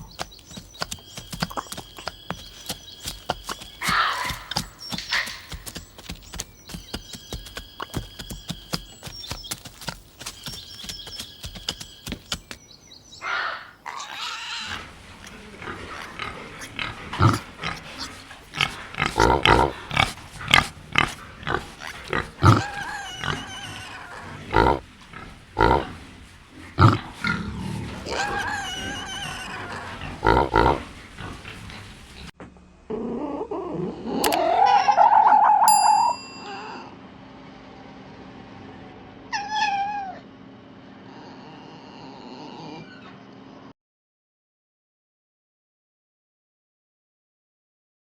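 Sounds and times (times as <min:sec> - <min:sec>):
pigs grunting and squealing: 0:13.2 - 0:35.7, 0:39.3 - 0:43.7.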